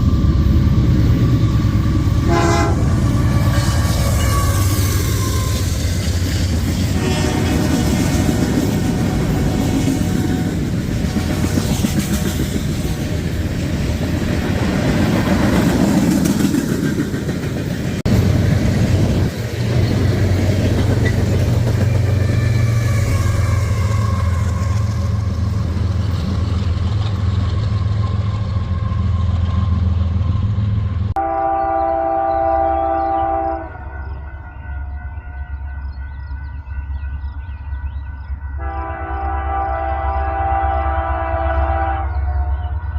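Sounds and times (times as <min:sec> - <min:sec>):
train wheels clattering on rails: 0:00.0 - 0:31.1
diesel locomotive engine drone: 0:00.0 - 0:42.9
locomotive air horn: 0:02.2 - 0:06.0, 0:06.8 - 0:11.8, 0:22.1 - 0:25.3, 0:31.1 - 0:35.8, 0:38.5 - 0:42.9.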